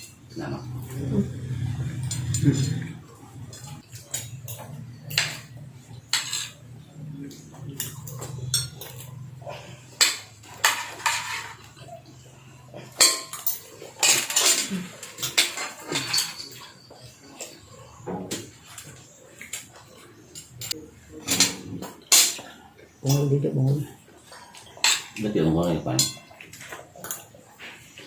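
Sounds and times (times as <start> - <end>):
cutlery clinking on plates: 1.9 - 2.8, 3.5 - 23.3, 24.2 - 28.0.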